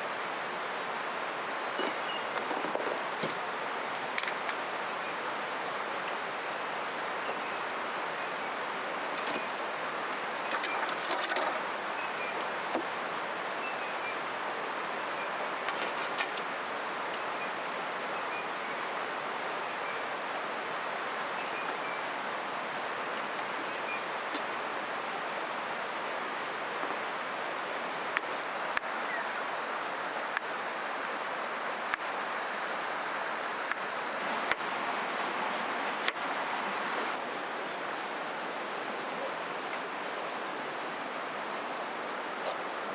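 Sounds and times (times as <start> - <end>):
river flowing: 0.0 - 2.4, 3.0 - 42.9
campfire crackling: 27.6 - 37.6.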